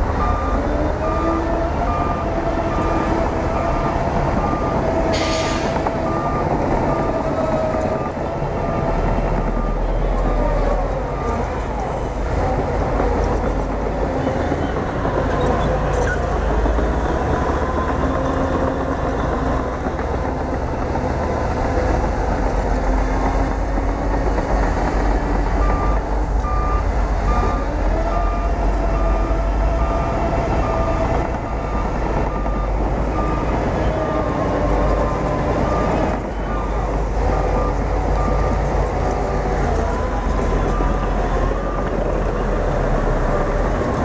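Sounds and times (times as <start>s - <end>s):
bulldozer diesel engine rumbling: 0.0s - 44.0s
reversing alarm beeping: 0.1s - 11.5s, 25.6s - 39.1s, 39.7s - 42.2s.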